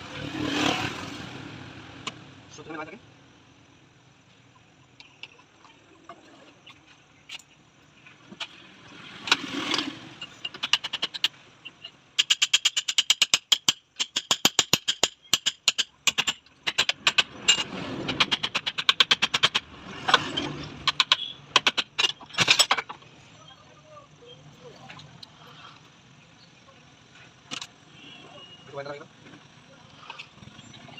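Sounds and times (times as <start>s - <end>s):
rapid metallic clicks: 9.3s - 22.9s.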